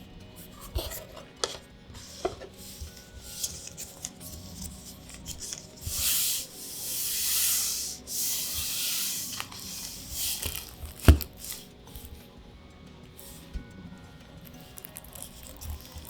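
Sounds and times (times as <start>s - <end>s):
cards swishing and rustling: 0.4s - 12.3s, 13.1s - 16.0s.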